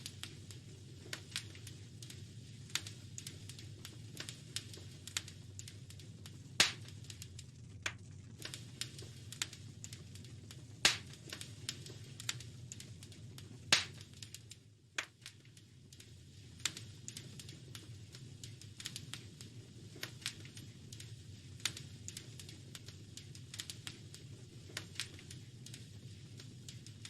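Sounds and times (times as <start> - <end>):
loud fire pops: 0.0 - 27.0
low steady rumble: 0.0 - 27.0
wood fire crackling: 0.0 - 27.0.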